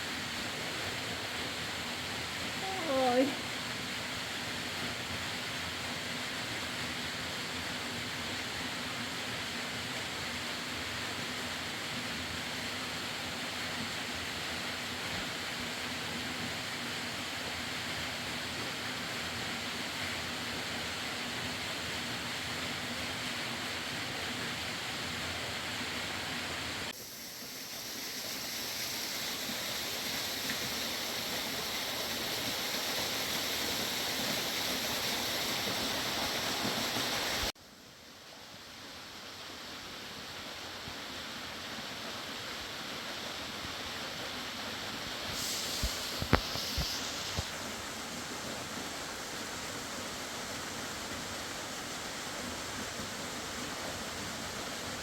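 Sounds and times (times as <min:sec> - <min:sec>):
river water rushing: 0:28.6 - 0:37.5.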